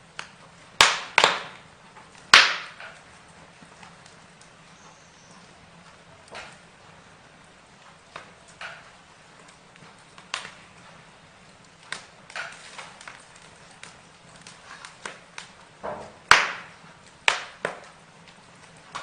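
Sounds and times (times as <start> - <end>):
burning wood crackling: 0.0 - 19.0
sharp pops and snaps: 0.1 - 4.6, 7.9 - 10.8, 11.5 - 19.0.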